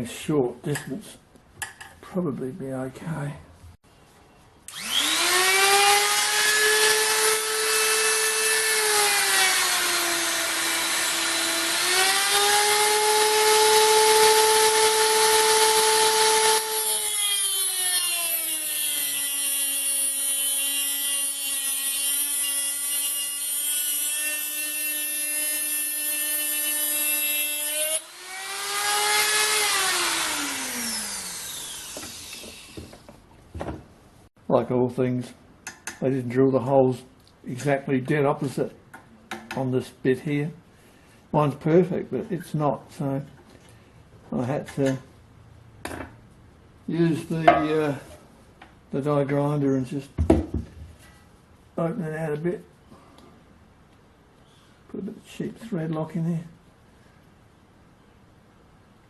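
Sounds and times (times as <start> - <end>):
die grinder whining: 4.7 - 18.8, 27.6 - 32.9.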